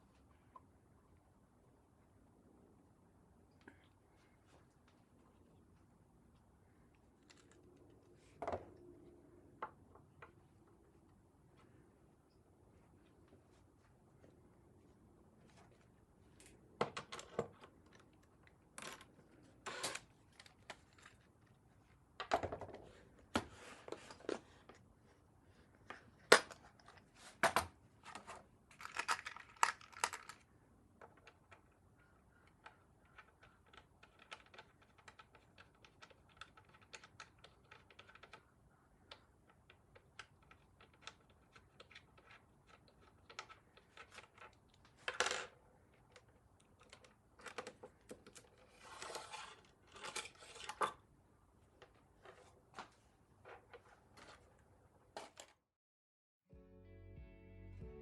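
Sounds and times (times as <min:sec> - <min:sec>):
small objects clicking and tapping: 0:28.7 - 0:31.8.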